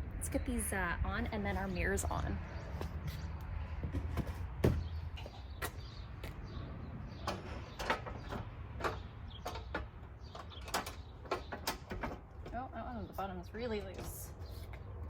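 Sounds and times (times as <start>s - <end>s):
metal clicks and knocks: 7.2s - 12.6s.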